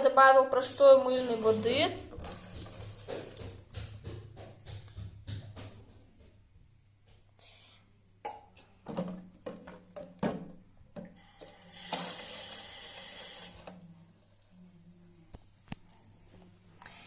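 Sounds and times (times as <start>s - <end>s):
water pouring: 1.1s - 3.7s, 11.0s - 14.5s.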